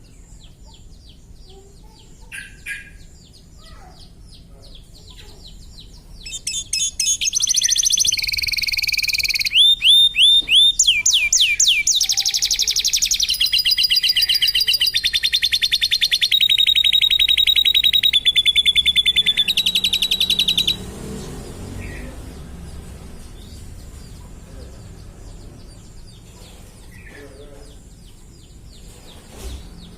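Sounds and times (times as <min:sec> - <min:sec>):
canary singing trills: 0:00.0 - 0:29.9.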